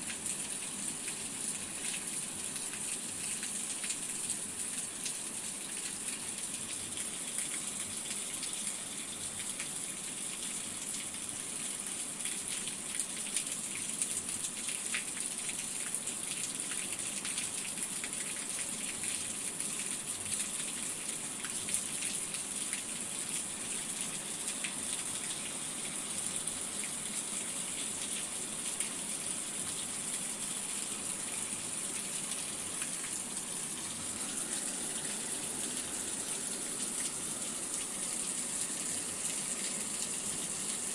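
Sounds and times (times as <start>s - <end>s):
steady rain hissing: 23.0s - 40.9s.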